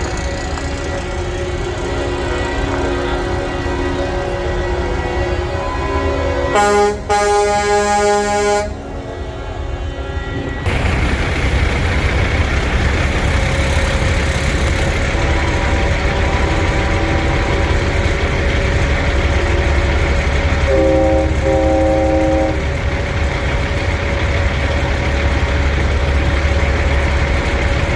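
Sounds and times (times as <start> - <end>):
low engine rumble: 0.0 - 7.7, 8.4 - 27.9
multi-note air horn chord: 0.8 - 10.7, 20.6 - 22.7
truck air horn single note: 5.6 - 8.8, 20.7 - 22.6.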